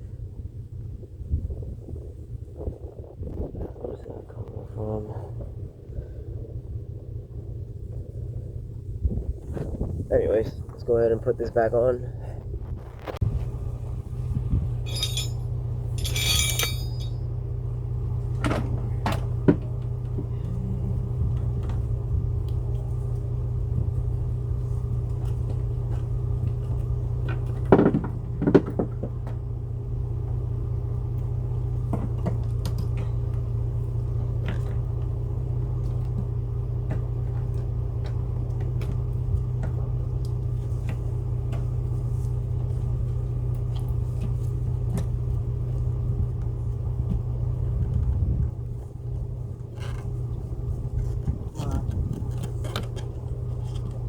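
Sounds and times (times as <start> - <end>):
hand tools clicking and knocking: 14.9 - 17.1
brief rattles: 14.9 - 17.2.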